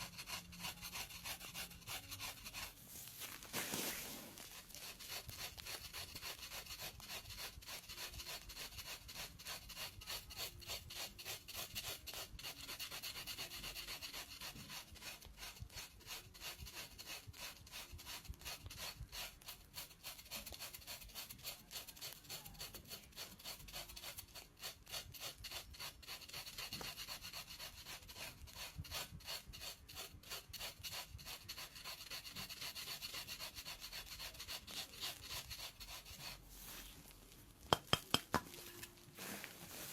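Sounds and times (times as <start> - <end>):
blade scraping skin: 0.0 - 13.0, 16.4 - 36.4.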